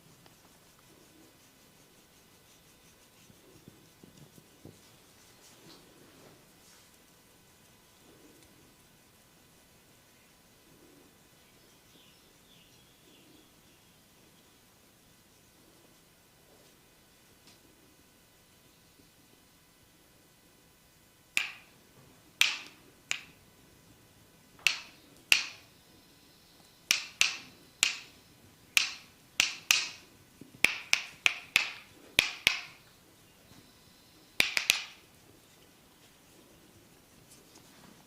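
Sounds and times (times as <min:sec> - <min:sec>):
hands popping during massage: 0:21.4 - 0:21.7, 0:22.4 - 0:23.4, 0:24.6 - 0:25.6, 0:26.9 - 0:28.1, 0:28.8 - 0:30.0, 0:30.6 - 0:32.8, 0:34.4 - 0:35.0.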